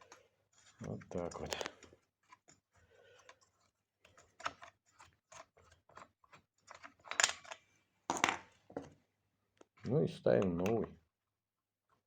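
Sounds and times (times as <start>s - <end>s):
small hard parts clicking and knocking: 0.0s - 9.0s.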